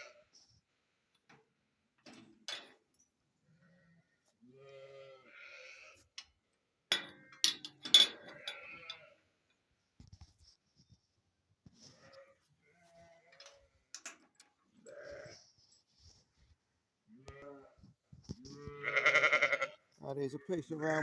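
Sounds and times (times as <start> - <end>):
metal gate hook clanking: 2.1 - 2.8, 6.9 - 9.1
sheep bleating: 3.6 - 6.0, 14.8 - 15.4, 18.6 - 21.0.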